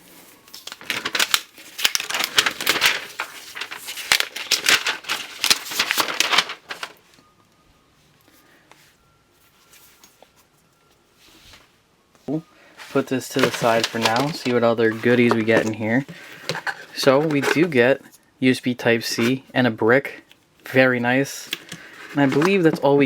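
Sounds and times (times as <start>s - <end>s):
packaging wrap crinkling and tearing: 0.5s - 7.0s, 12.8s - 17.8s, 21.4s - 22.8s.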